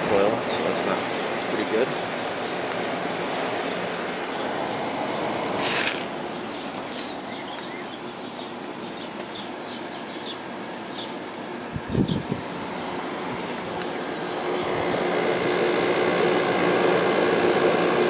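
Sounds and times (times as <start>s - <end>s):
window air conditioner running: 0.0s - 18.0s
wind on microphone: 11.7s - 12.5s.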